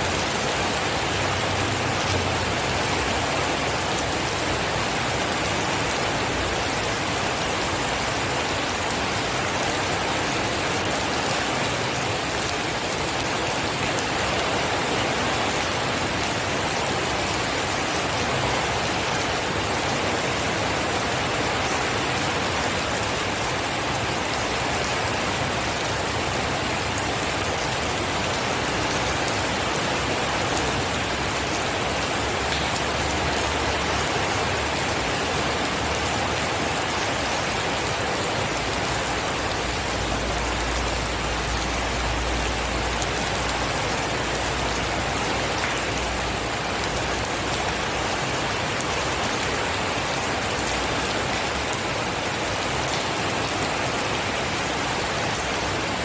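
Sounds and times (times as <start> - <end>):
heavy rain hissing: 25.2 - 51.0.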